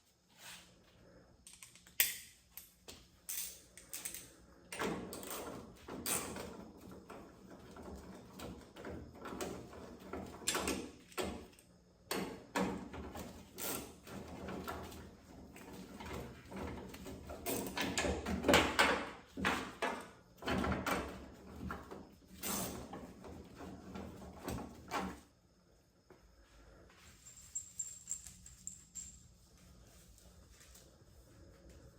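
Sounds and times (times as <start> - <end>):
metal parts clunking and rattling: 3.3 - 25.2.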